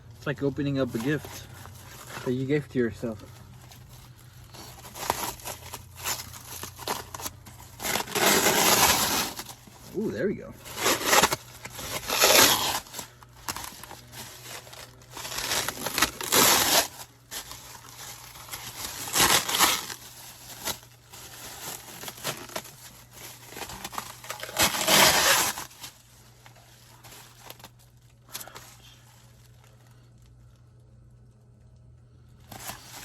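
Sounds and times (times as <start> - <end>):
packaging tearing and crinkling: 0.3 - 30.4, 32.4 - 33.0.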